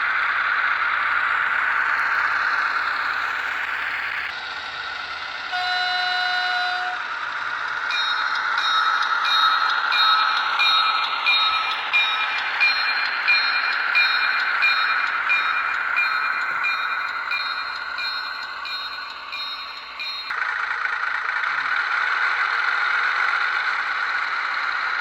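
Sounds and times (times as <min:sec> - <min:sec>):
railcar running sound: 0:00.0 - 0:25.0
model train horn toot: 0:05.5 - 0:07.1.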